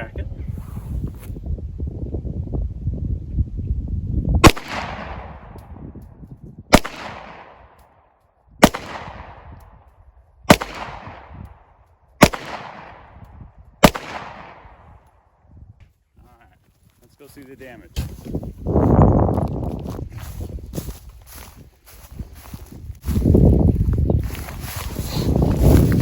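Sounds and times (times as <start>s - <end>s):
pistol shots with echo: 4.4s - 5.6s, 6.7s - 7.8s, 8.6s - 9.6s, 10.5s - 13.2s, 13.8s - 15.0s.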